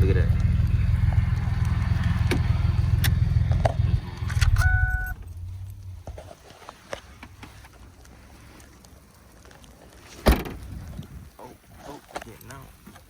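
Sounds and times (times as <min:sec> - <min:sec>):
pickup engine rumbling: 0:00.0 - 0:13.0
electronic beep: 0:04.4 - 0:05.2.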